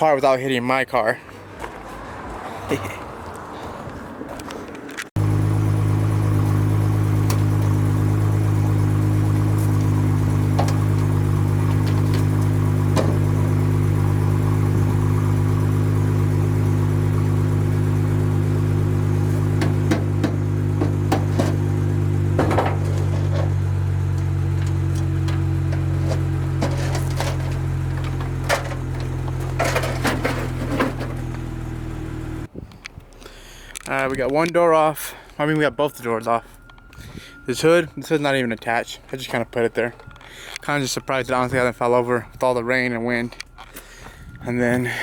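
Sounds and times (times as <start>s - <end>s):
low steady hum: 5.2s - 32.5s
light clicks and knocks: 6.0s - 31.5s.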